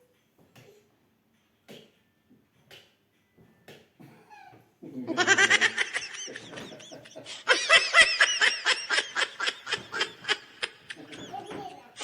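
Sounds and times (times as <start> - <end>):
person laughing hard: 5.1 - 11.3.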